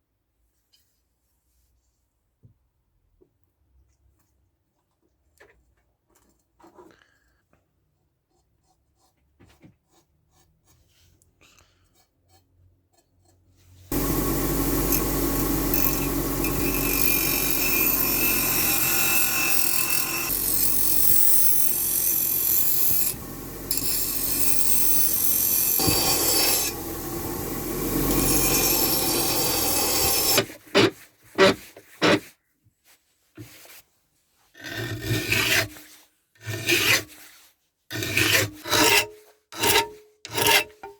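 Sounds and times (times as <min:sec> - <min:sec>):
motor hum: 0:13.9 - 0:30.4
power tool grinding: 0:13.9 - 0:30.5.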